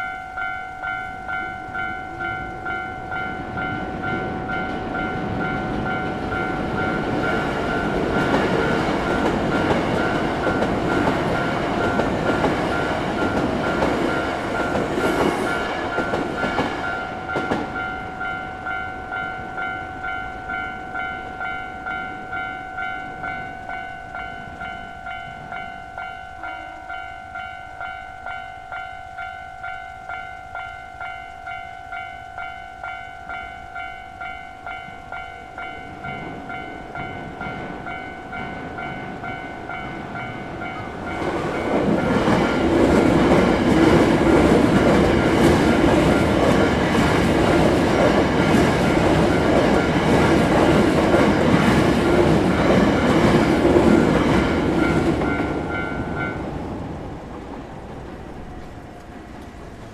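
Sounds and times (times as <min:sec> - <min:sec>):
train wheels rumbling over rails: 0:01.0 - 0:20.6, 0:31.0 - 0:59.9.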